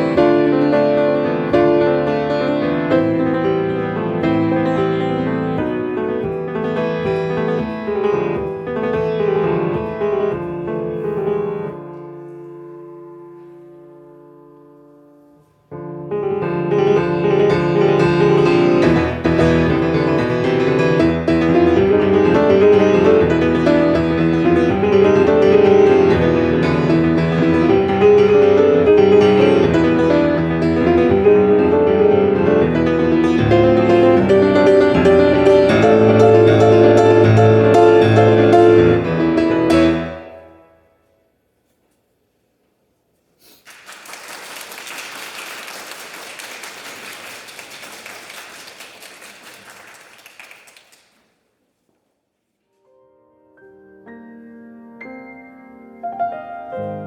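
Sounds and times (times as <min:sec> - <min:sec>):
solo piano playing: 0:00.0 - 0:40.8, 0:53.0 - 0:57.0.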